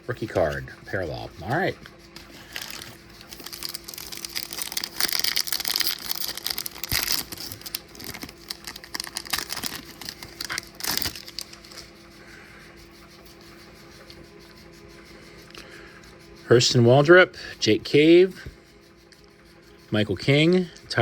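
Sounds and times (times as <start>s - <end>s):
cards rustling: 2.2s - 11.9s
foil wrapper tearing and crinkling: 2.3s - 11.8s.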